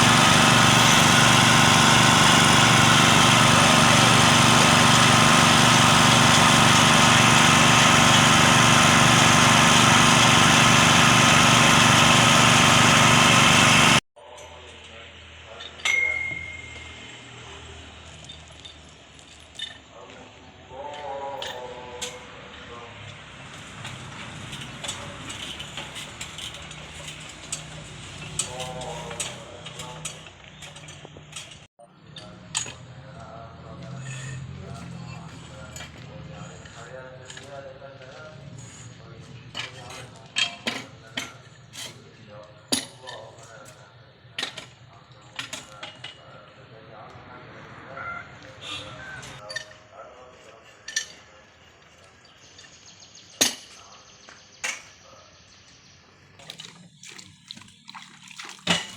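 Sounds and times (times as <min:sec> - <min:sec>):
drilling machine humming: 0:00.0 - 0:14.0
small engine running: 0:00.0 - 0:14.0.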